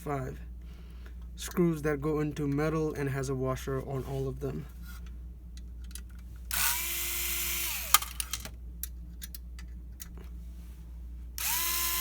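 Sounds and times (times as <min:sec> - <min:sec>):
electric screwdriver whirring: 0:06.5 - 0:08.4, 0:11.4 - 0:12.0.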